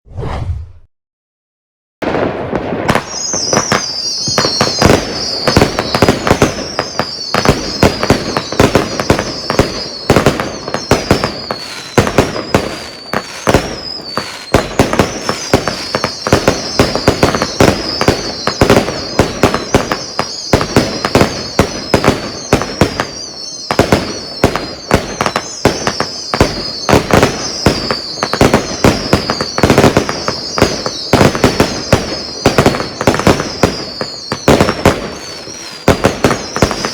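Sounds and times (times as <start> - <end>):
falling firework whistles: 2.0 - 36.9
fireworks barrage of launches and bursts: 2.0 - 36.9.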